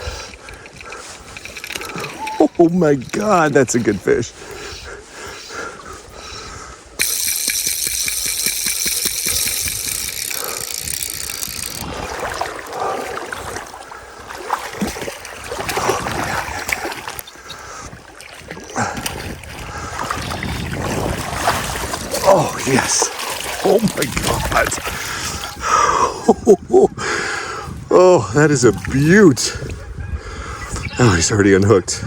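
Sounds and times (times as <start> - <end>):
water splashing and sloshing: 0.0 - 6.2, 7.0 - 25.6.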